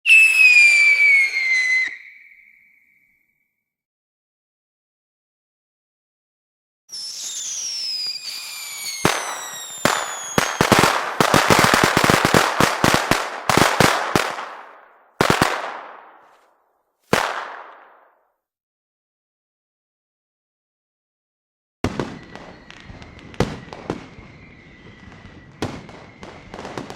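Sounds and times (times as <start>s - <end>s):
falling firework whistles: 0.0s - 3.6s, 6.9s - 14.8s, 21.8s - 26.9s
firework fuse hissing: 6.9s - 12.3s
firework bangs and crackles: 6.9s - 16.2s, 17.1s - 18.2s, 21.8s - 26.9s.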